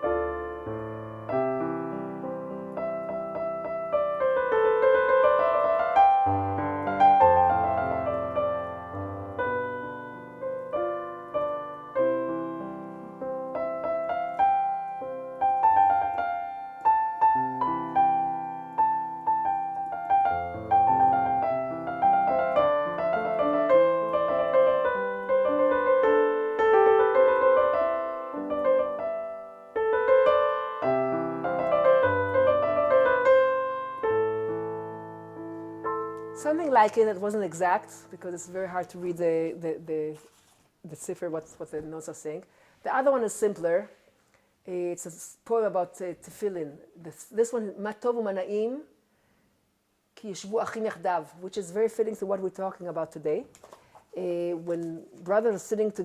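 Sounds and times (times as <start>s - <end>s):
slow piano melody: 0.0s - 39.1s.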